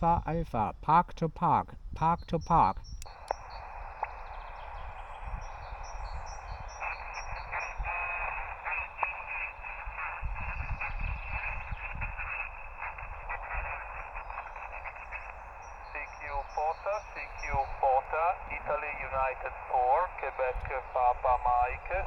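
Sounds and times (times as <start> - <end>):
garbled radio signals: 0.0 - 22.0
radio static hiss: 0.0 - 22.0
high bird chirps: 2.3 - 12.9.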